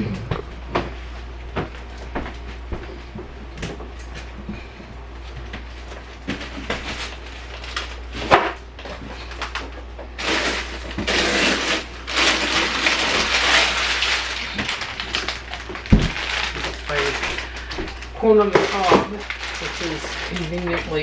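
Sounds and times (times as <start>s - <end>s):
loud rustling: 5.7s - 21.0s.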